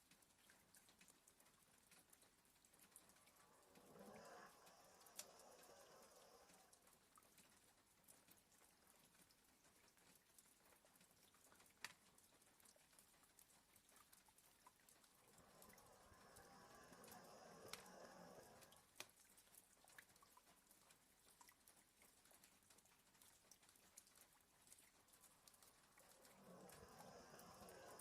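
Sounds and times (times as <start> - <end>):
rain tapping on a window: 0.0 - 28.0
dog snoring softly: 2.6 - 7.7, 14.9 - 19.2, 25.0 - 28.0.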